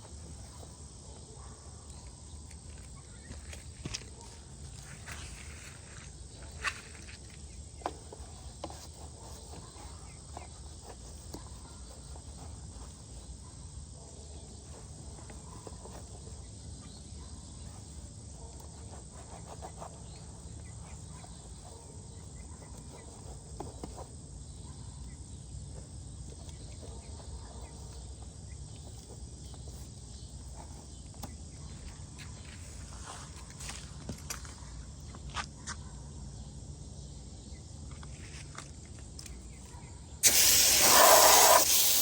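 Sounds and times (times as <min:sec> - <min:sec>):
insects chirping: 0:19.6 - 0:42.0.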